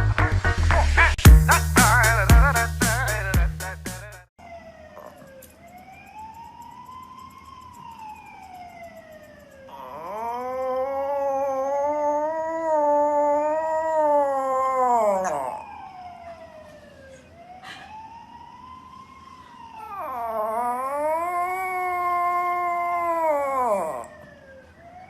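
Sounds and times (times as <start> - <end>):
dog howling: 9.7 - 15.8, 19.8 - 24.2.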